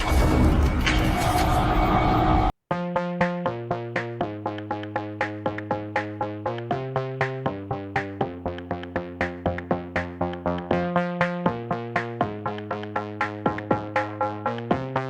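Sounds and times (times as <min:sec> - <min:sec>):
electronic music with synthesizer chords: 0:00.0 - 0:15.0.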